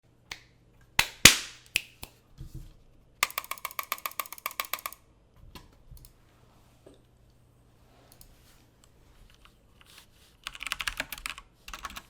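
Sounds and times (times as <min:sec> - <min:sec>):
mechanical keyboard typing: 0:03.2 - 0:05.0, 0:10.4 - 0:12.0.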